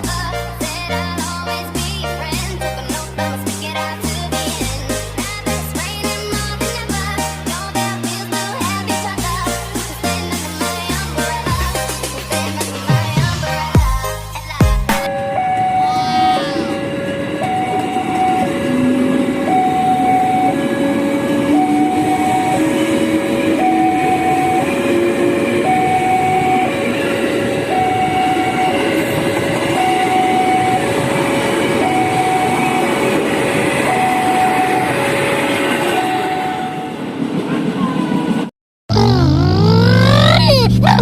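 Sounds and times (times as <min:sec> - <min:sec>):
train rumble: 0:00.0 - 0:41.0
level crossing alarm: 0:15.1 - 0:37.1.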